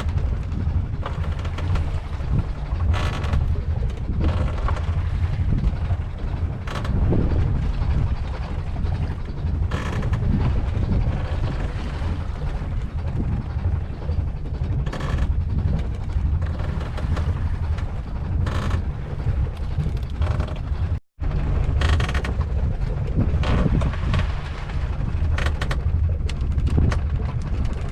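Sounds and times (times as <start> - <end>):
boat engine low rumble: 0.0 - 27.9
wind buffeting microphone: 0.0 - 27.9.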